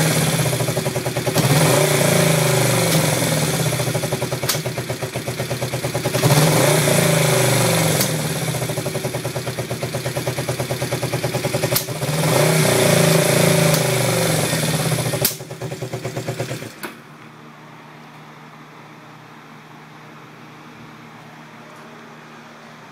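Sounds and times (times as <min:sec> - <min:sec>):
engine revving: 0:00.0 - 0:16.8
motorcycle engine idling roughly: 0:00.0 - 0:16.8.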